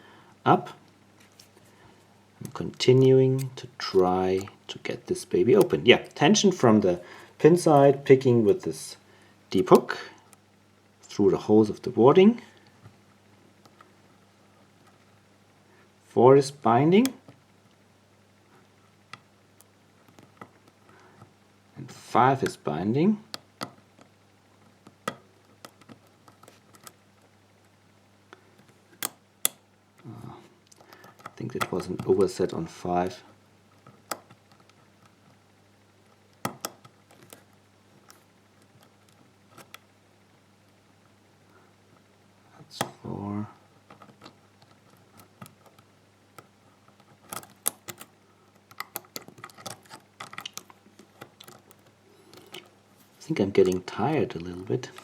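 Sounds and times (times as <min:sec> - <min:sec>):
lock pick clicking on pins: 0:36.3 - 0:37.4, 0:43.9 - 0:52.7
lock pick clicking in lock: 0:47.3 - 0:48.1, 0:48.7 - 0:50.6.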